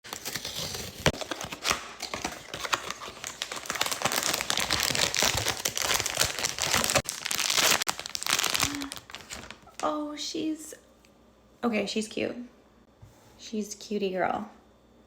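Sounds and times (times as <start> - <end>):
plastic packaging crinkling: 0.0 - 9.9.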